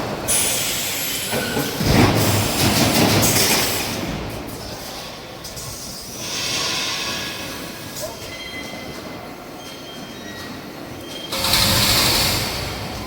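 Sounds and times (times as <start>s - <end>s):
machinery hiss: 0.3s - 4.2s, 5.6s - 8.0s
industrial machinery running: 11.3s - 13.0s.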